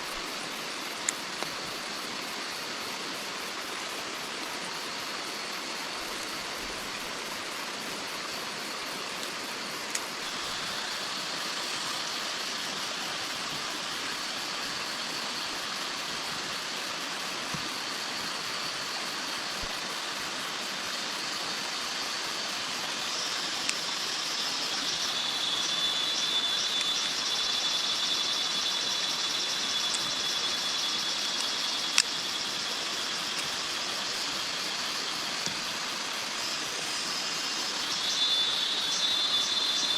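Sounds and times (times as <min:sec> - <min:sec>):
rain hissing: 0:08.6 - 0:27.7.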